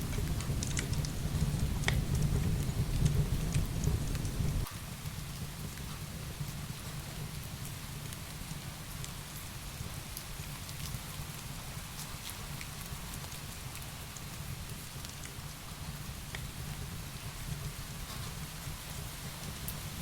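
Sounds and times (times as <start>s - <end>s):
heavy rain falling: 0.0s - 4.7s
wood fire crackling: 0.0s - 9.2s.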